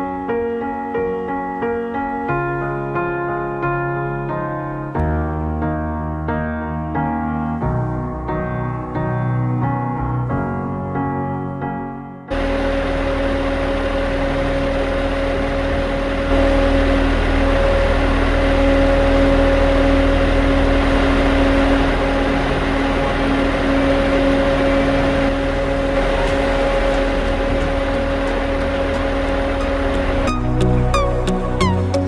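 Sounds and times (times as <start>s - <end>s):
truck engine running: 12.3s - 32.0s.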